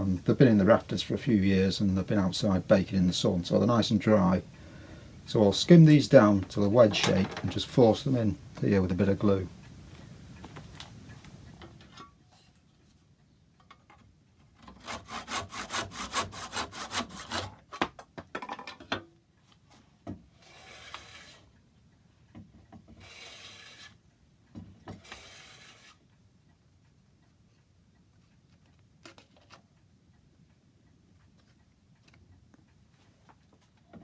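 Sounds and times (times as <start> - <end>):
hand tool scraping wood: 0.4 - 9.6, 14.6 - 17.6, 20.4 - 21.5, 22.9 - 24.0, 25.0 - 26.0.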